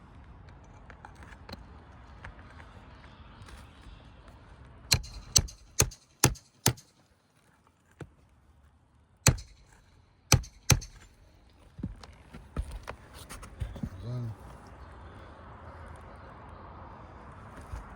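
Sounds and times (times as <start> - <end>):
hammer striking metal tool: 4.9 - 6.9, 9.3 - 11.2.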